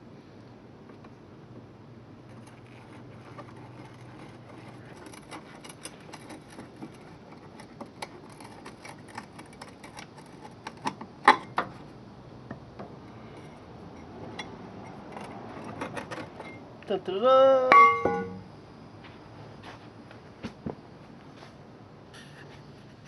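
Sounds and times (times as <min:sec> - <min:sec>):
sharp knocks: 0:17.7 - 0:18.5.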